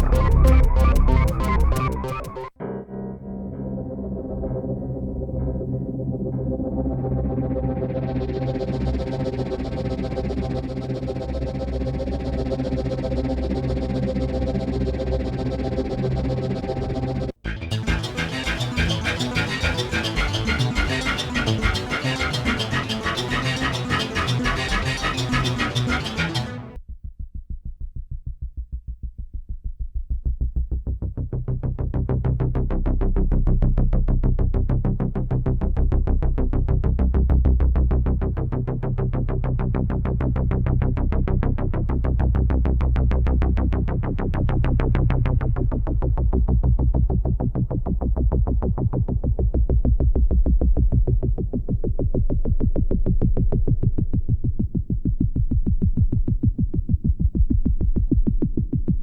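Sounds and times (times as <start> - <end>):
synthesizer pulse over bass notes: 0.0 - 26.8, 30.4 - 59.0.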